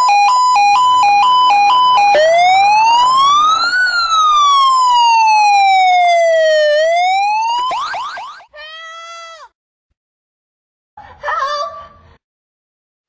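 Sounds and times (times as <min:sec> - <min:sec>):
electronic toy siren: 0:00.0 - 0:08.5.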